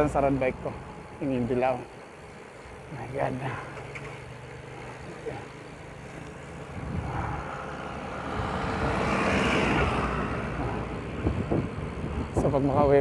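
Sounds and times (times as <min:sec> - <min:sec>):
motor vehicle approaching: 0:00.0 - 0:13.0
road noise rumble: 0:00.0 - 0:13.0.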